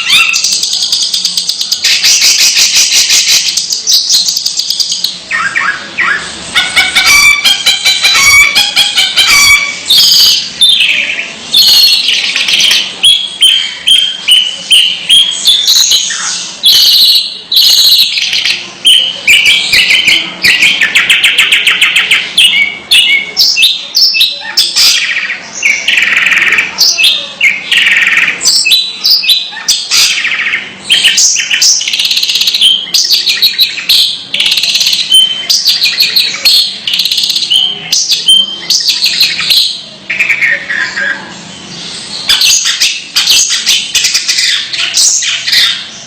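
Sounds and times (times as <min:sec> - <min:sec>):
shrike singing scratchy chatter: 0:00.0 - 0:46.0.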